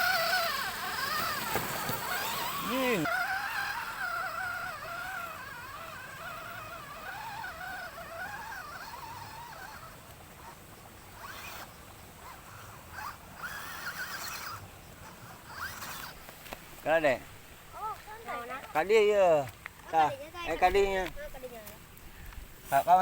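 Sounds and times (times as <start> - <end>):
toy car electric motor whining: 0.0 - 17.2.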